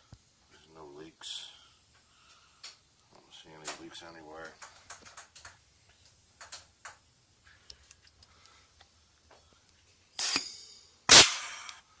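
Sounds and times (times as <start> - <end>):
short hiss of air: 10.2 - 11.8.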